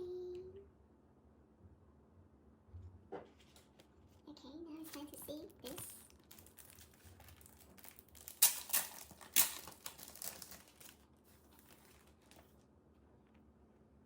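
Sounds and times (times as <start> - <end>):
packaging crinkling and rustling: 4.8 - 12.7.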